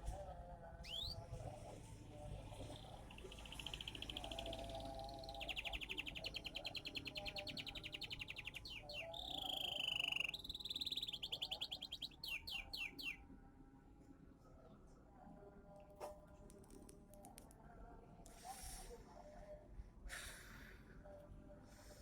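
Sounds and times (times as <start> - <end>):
songbird singing trills: 0.8 - 1.2, 2.4 - 13.2.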